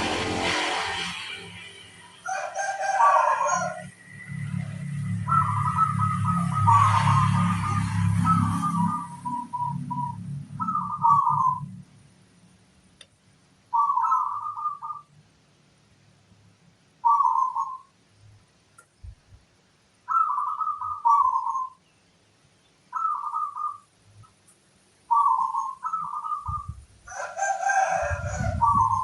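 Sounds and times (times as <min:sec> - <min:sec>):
low bird call with rumble: 0:02.2 - 0:11.9, 0:27.9 - 0:29.0
dove cooing: 0:02.3 - 0:07.4, 0:08.2 - 0:11.8, 0:13.7 - 0:15.1, 0:17.0 - 0:17.9, 0:20.1 - 0:21.8, 0:22.9 - 0:23.8, 0:25.1 - 0:29.0.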